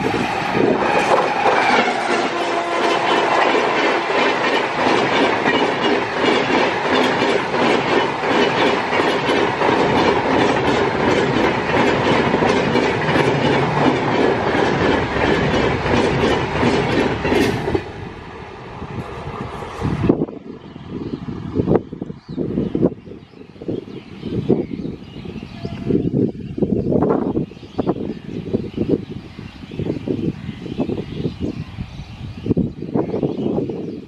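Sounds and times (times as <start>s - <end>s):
train wheels clattering: 0.0s - 18.2s.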